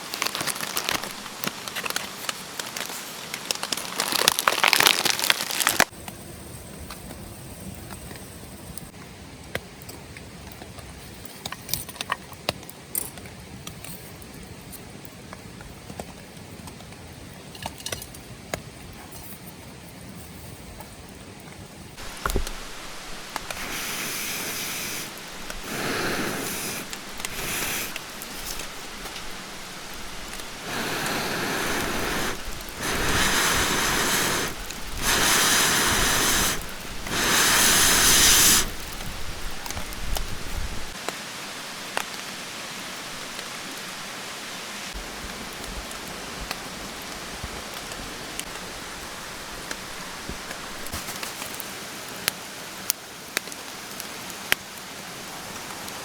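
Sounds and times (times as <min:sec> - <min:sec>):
steady rain: 0:00.0 - 0:56.0
loud noisy bursts: 0:22.0 - 0:28.6, 0:30.5 - 0:38.9.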